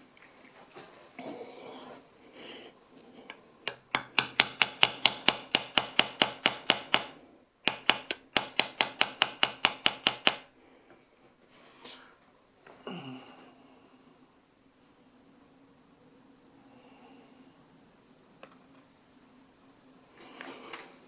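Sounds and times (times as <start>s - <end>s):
hammer tapping on metal punch: 3.7s - 10.5s.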